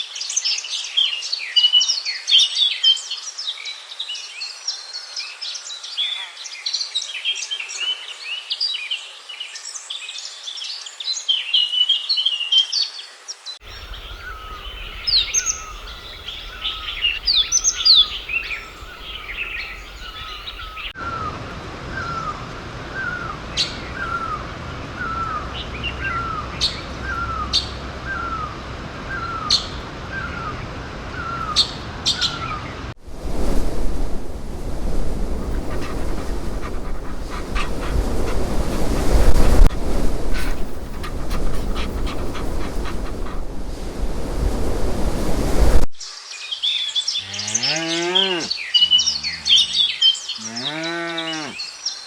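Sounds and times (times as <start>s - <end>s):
songbirds chirping and singing: 13.7s - 21.0s, 35.4s - 39.7s, 40.3s - 43.5s.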